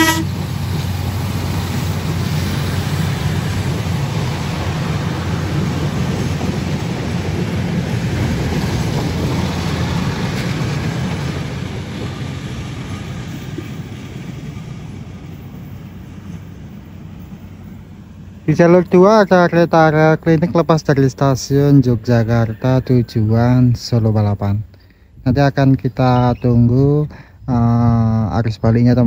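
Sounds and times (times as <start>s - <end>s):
train wheels rumbling on rail: 0.0s - 28.0s.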